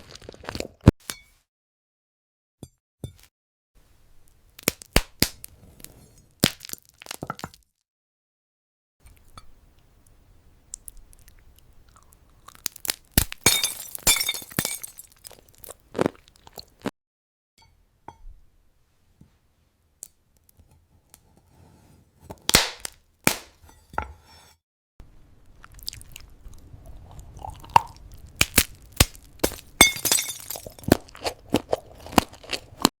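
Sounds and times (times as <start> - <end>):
brittle crunching when chewing: 0.0 - 0.8, 6.4 - 7.6, 10.7 - 13.5, 15.0 - 16.9, 25.6 - 29.8, 30.4 - 32.9.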